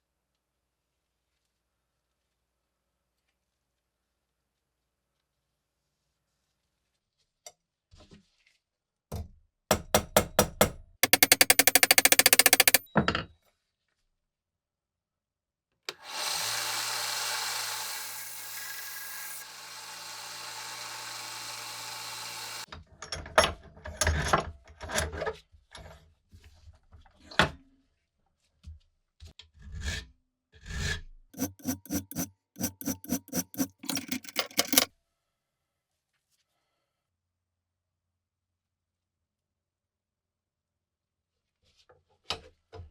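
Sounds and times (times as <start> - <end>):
tapping on metal: 9.1 - 12.8, 31.4 - 34.9
scraping rusty metal: 11.0 - 12.8, 31.4 - 34.9
small power tool running: 11.0 - 12.8, 15.9 - 22.7, 31.4 - 34.9.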